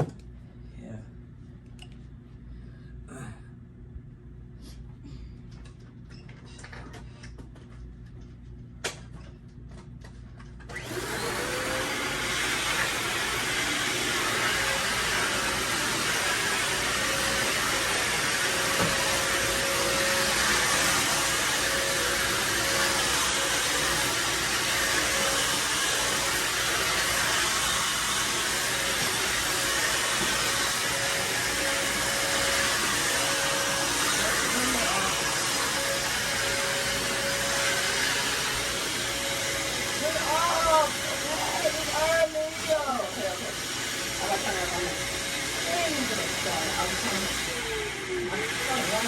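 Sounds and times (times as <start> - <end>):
vacuum cleaner running: 10.6 - 49.0.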